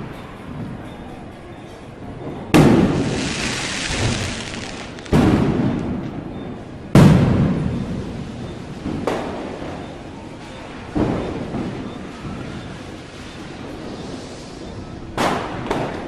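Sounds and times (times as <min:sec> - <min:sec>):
loud firecracker bangs: 0:02.2 - 0:09.9, 0:10.9 - 0:16.0
rolling echo: 0:02.2 - 0:10.0.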